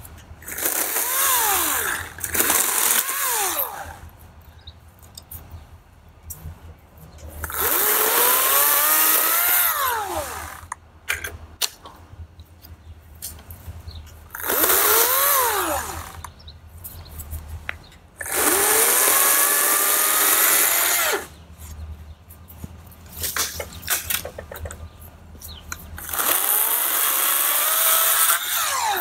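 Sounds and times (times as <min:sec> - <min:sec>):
electric chainsaw whining: 0:00.4 - 0:04.0, 0:07.4 - 0:10.7, 0:14.3 - 0:16.3, 0:18.2 - 0:21.3, 0:26.0 - 0:29.0.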